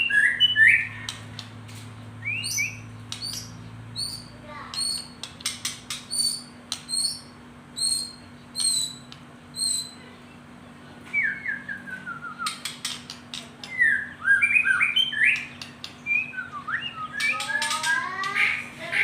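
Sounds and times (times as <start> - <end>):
songbird singing: 0.0 - 19.0
sharp clicks: 4.7 - 6.1.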